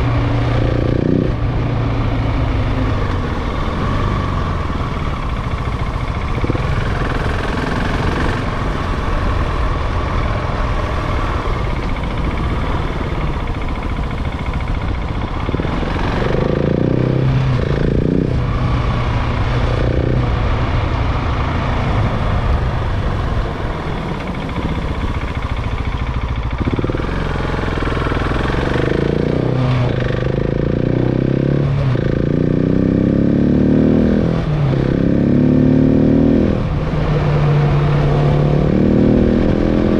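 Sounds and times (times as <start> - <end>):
steady rushing noise: 0.0 - 30.9
motorcycle engine revving: 0.0 - 39.9.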